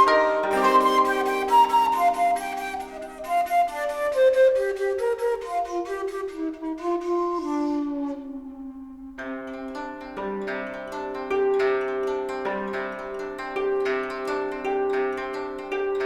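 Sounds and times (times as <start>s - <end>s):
flute melody: 0.0s - 9.2s
plucked notes: 0.0s - 16.0s.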